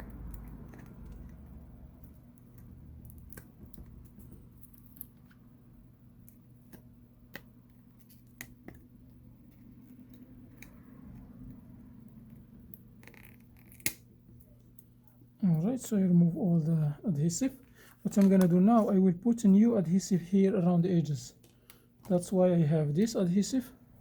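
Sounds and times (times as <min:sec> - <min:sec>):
adhesive being peeled crackling: 0:00.0 - 0:05.4, 0:06.2 - 0:15.0
low steady hum: 0:00.0 - 0:24.0.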